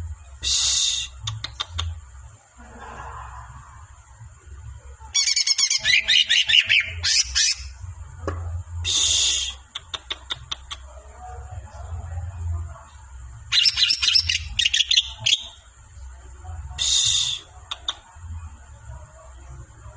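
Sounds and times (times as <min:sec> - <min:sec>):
high thin whine: 0:00.0 - 0:01.3, 0:07.6 - 0:09.7
sharp clicking bird notes: 0:01.2 - 0:01.9, 0:09.7 - 0:10.8
songbird harsh calls: 0:05.2 - 0:07.7, 0:13.5 - 0:15.6.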